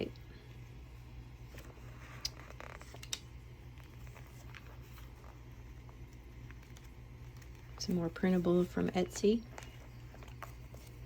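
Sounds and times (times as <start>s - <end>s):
low steady hum: 0.0s - 11.0s
paper rustle: 1.4s - 8.7s, 9.5s - 11.0s
paper page clicks: 2.0s - 3.2s.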